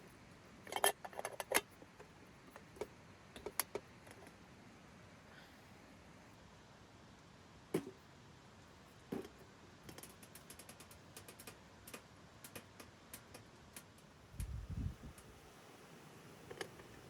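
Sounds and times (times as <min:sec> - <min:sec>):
faint irregular clicks: 0:00.5 - 0:04.4, 0:09.1 - 0:15.4, 0:16.4 - 0:17.0.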